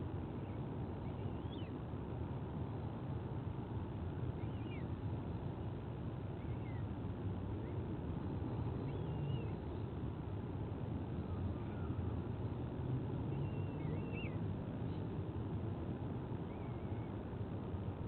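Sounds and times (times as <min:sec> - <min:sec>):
faint high bird chirps: 0:00.4 - 0:01.8, 0:04.4 - 0:04.9, 0:06.4 - 0:06.8, 0:08.5 - 0:09.8, 0:13.3 - 0:15.0, 0:16.4 - 0:17.2.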